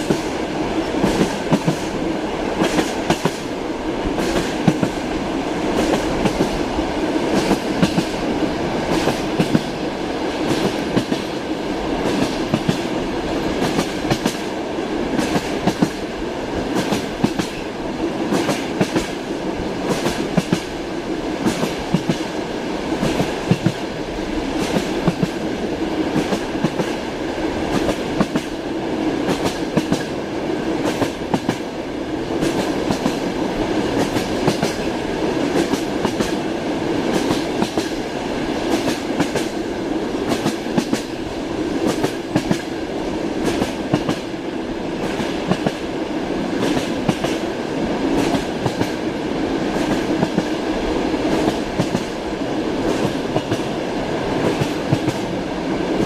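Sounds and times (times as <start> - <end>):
train wheels clacking over rail joints: 0.0 - 2.0, 2.6 - 3.5, 4.1 - 5.0, 5.7 - 6.6, 7.3 - 8.3, 8.9 - 14.5, 15.1 - 19.2, 19.8 - 20.8, 21.4 - 22.4, 23.0 - 23.9, 24.5 - 25.5, 27.7 - 28.6, 29.2 - 30.2, 30.8 - 31.7, 32.3 - 41.2, 41.8 - 42.8, 43.4 - 44.3, 45.0 - 45.8, 46.6 - 47.5, 48.1 - 49.0, 49.7 - 50.6, 51.2 - 52.2, 54.4 - 55.3
railway carriage rumble: 0.0 - 56.0.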